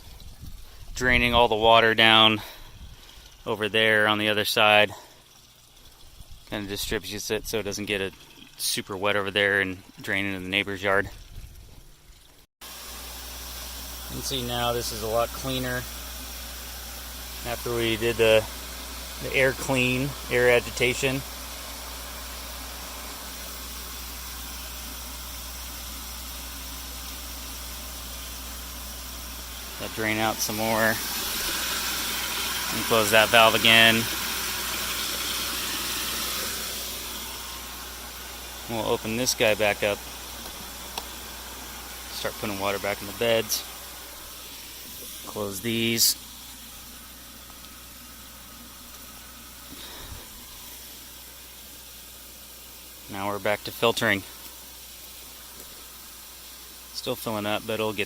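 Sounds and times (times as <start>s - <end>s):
flowing water hiss: 0.0s - 58.0s
pond pump motor hum: 0.0s - 58.0s.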